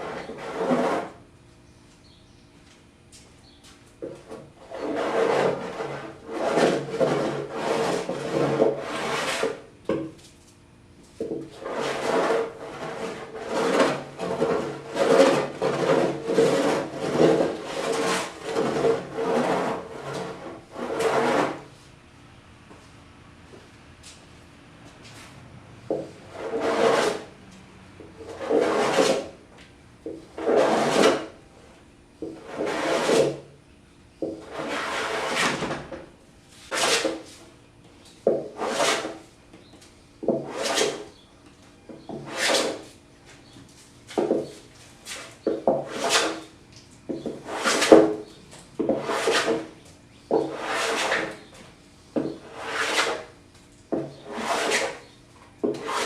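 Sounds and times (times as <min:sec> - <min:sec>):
hand plane shaving wood: 0:00.0 - 0:01.2, 0:04.2 - 0:09.7, 0:11.5 - 0:21.7, 0:25.9 - 0:27.3, 0:28.0 - 0:29.4, 0:30.2 - 0:31.4, 0:32.2 - 0:33.4, 0:34.2 - 0:35.9, 0:36.6 - 0:37.4, 0:38.2 - 0:39.3, 0:40.2 - 0:41.1, 0:42.0 - 0:42.9, 0:44.2 - 0:46.5, 0:47.1 - 0:51.6, 0:52.2 - 0:56.0.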